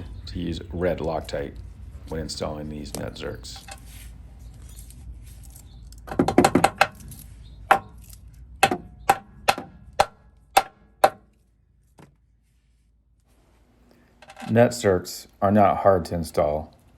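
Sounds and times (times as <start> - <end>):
sharp knocks on steel frame: 6.1 - 7.0, 7.7 - 8.0, 8.6 - 11.3.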